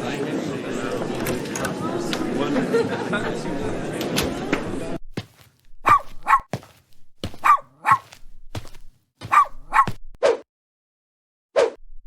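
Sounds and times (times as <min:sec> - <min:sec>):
puppy yapping: 0:05.8 - 0:06.5, 0:07.3 - 0:08.2, 0:09.2 - 0:10.0.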